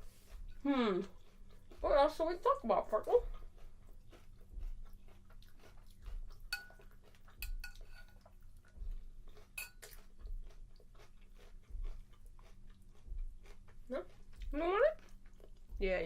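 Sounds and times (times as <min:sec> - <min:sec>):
metal spoon clinking on bowl: 0:06.5 - 0:08.2, 0:09.6 - 0:09.9.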